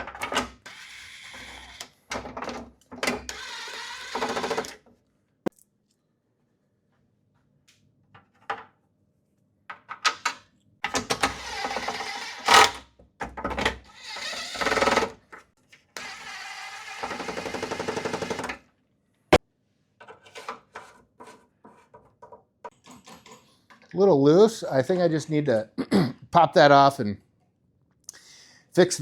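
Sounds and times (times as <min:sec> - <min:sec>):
power drill driving screws: 0:00.6 - 0:01.9, 0:03.2 - 0:04.8, 0:11.2 - 0:12.8, 0:13.9 - 0:15.2, 0:16.0 - 0:18.6
drill clicks: 0:03.2 - 0:04.8, 0:14.0 - 0:15.1, 0:16.0 - 0:18.5.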